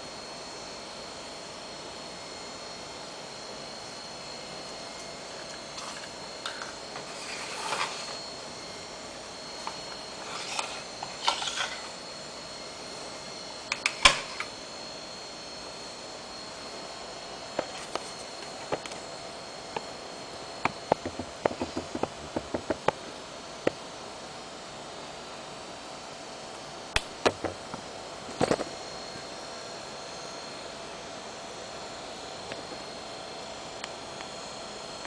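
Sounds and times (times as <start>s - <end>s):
hard drive high-pitched whine: 0.0s - 35.0s
hard drive clicks: 20.6s - 23.0s.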